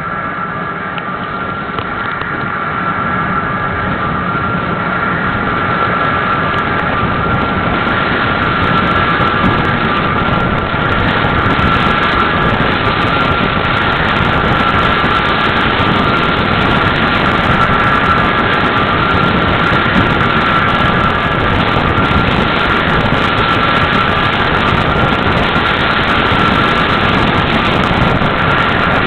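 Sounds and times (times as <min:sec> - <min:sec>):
steady high hum: 0:00.0 - 0:29.0
tornado roaring: 0:00.0 - 0:29.0.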